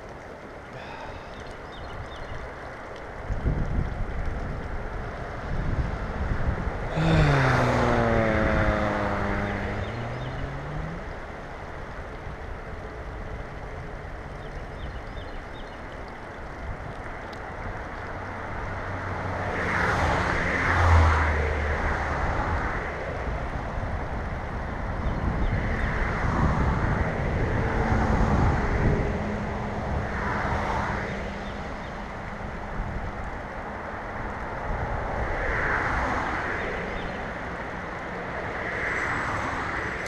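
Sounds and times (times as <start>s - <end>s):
river water rushing: 0.0s - 3.3s, 6.9s - 12.6s
engine passing by: 6.8s - 12.4s, 18.4s - 24.0s.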